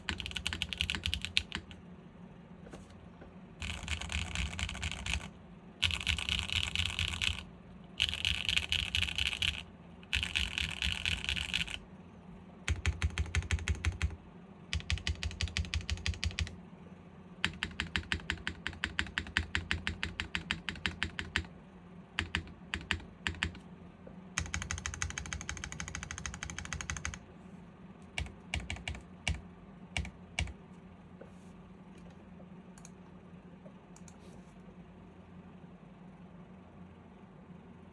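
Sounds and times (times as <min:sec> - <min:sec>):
mechanical keyboard typing: 0:00.0 - 0:01.8, 0:03.6 - 0:11.8, 0:12.7 - 0:16.5, 0:17.4 - 0:21.5, 0:22.2 - 0:23.6, 0:24.4 - 0:27.2, 0:28.1 - 0:29.4, 0:30.0 - 0:30.6.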